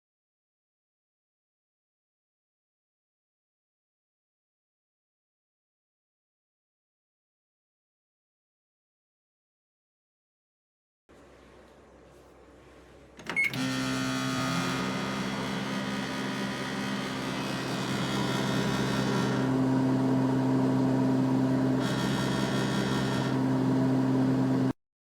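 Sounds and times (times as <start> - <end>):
microwave hum and fan whir: 11.1 - 24.8
microwave short beep: 13.2 - 14.1.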